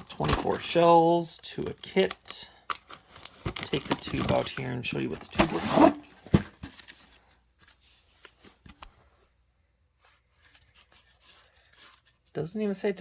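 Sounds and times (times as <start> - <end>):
packaging rustling: 0.0 - 8.8.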